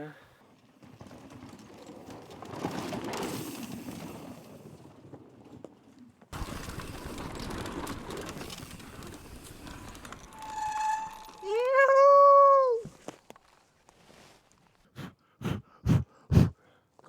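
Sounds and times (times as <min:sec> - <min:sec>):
bike tyres crunching on dirt trail: 0:00.4 - 0:11.9, 0:12.8 - 0:14.8.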